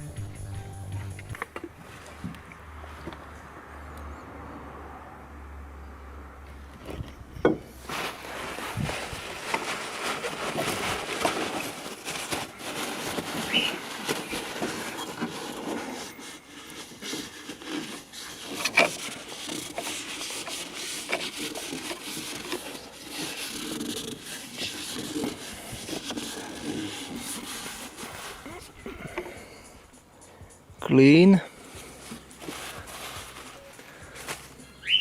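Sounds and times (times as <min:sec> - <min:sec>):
rubbing and scraping: 0:06.6 - 0:30.4, 0:31.5 - 0:35.0.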